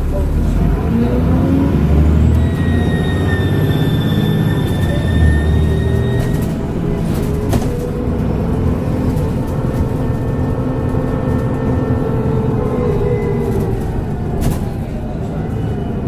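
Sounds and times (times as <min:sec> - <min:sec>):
bus diesel engine drone: 0:00.0 - 0:16.0
turbocharger whistle: 0:02.3 - 0:06.4.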